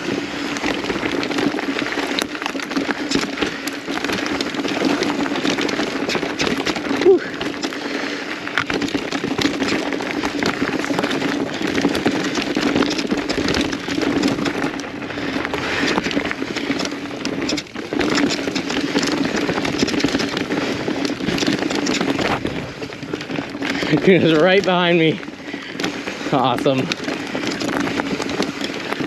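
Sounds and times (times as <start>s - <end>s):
bike rattling clicks and knocks: 0.0s - 29.0s
bike tyres crackling over gravel: 0.0s - 29.0s.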